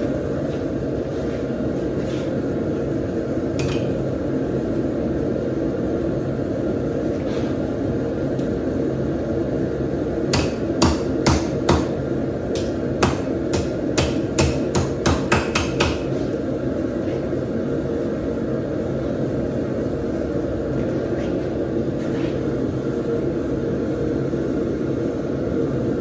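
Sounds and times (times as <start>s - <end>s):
low hum of shop machinery: 0.0s - 26.0s
hammer striking: 10.3s - 12.0s, 12.6s - 16.1s.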